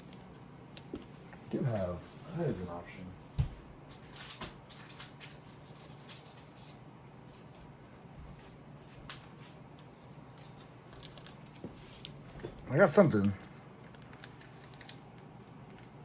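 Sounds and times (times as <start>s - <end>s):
trading cards clicking and rustling: 9.1s - 12.2s, 13.1s - 16.0s.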